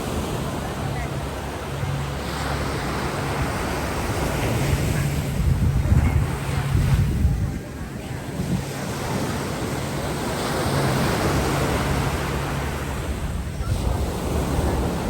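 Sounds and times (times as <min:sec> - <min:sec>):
surf rushing: 0:00.0 - 0:15.0
wind on the microphone: 0:03.3 - 0:10.0, 0:12.9 - 0:15.0.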